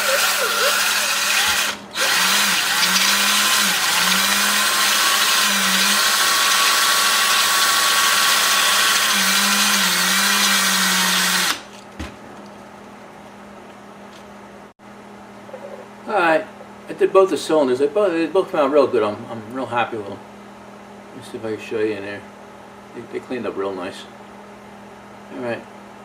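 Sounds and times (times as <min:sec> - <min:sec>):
power drill spinning: 0:00.0 - 0:11.6.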